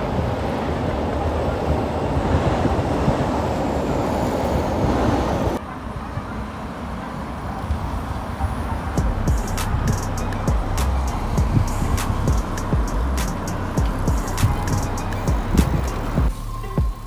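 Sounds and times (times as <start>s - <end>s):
wind on microphone: 7.6s - 17.0s
bicycle rolling rumble: 7.8s - 17.0s.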